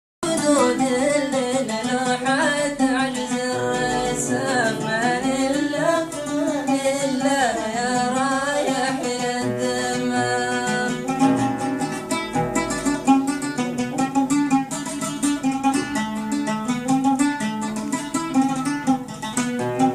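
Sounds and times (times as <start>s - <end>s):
held instrumental notes: 0.2s - 19.9s
plucked string notes: 0.2s - 19.9s
person singing melismatic melody: 0.4s - 13.4s.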